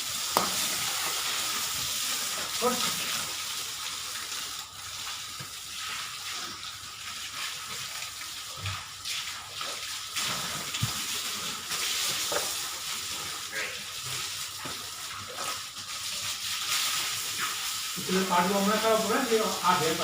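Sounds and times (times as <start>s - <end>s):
water running: 0.0s - 20.0s.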